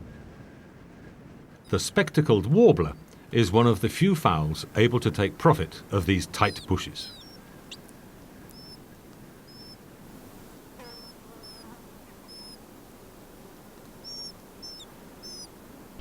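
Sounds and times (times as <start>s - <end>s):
warbler chirping: 2.8s - 16.0s.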